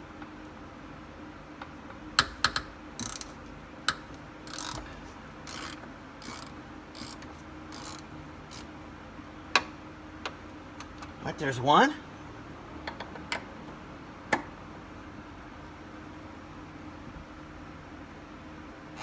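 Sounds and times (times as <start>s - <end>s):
socket ratchet strokes: 2.2s - 3.3s, 3.9s - 4.8s, 5.5s - 8.7s.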